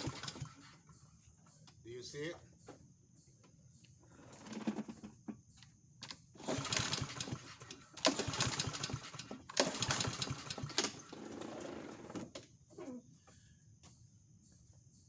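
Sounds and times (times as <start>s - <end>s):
lawnmower engine cranking: 0.0s - 0.8s, 6.0s - 12.3s.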